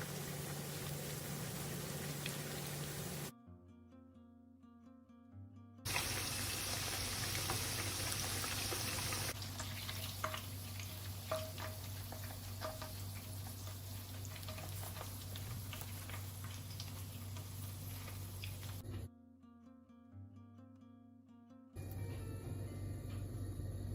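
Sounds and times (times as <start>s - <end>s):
food sizzling in oil: 0.0s - 3.3s, 5.9s - 18.8s.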